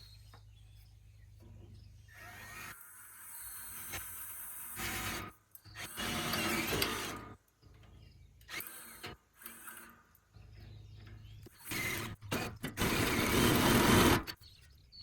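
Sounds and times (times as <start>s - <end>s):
power drill drilling metal: 2.1s - 7.4s, 8.5s - 10.0s, 11.5s - 14.4s.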